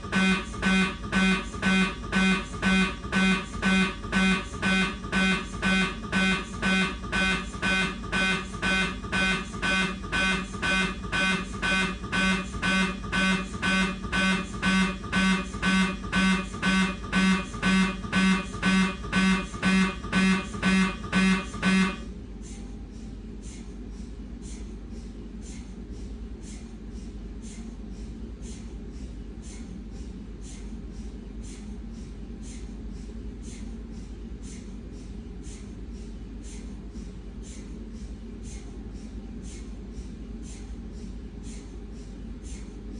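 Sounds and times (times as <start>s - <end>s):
mri scanner buzzing beeps: 0.0s - 22.1s.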